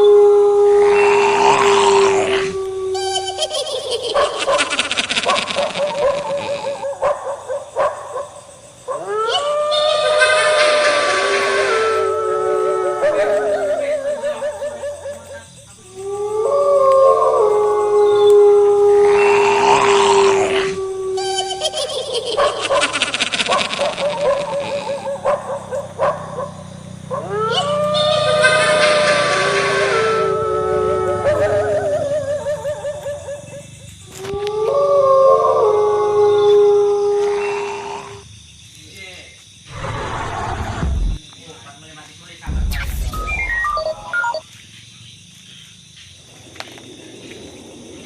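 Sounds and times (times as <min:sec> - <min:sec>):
dog howling: 0:00.0 - 0:03.4, 0:04.1 - 0:08.3, 0:08.9 - 0:21.7, 0:22.3 - 0:38.2
dog yipping: 0:03.0 - 0:08.2, 0:21.2 - 0:26.5
dog yelping and whimpering: 0:23.5 - 0:25.9.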